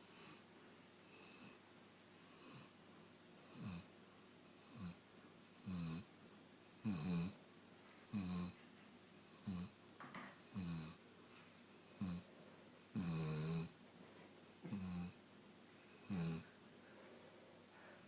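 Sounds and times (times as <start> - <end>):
dog snoring: 0.0 - 0.4, 1.0 - 1.6, 2.2 - 2.8, 3.4 - 3.9, 4.5 - 6.1, 6.7 - 7.4, 8.0 - 8.6, 9.2 - 11.0, 11.7 - 13.8, 14.5 - 15.2, 15.8 - 16.6.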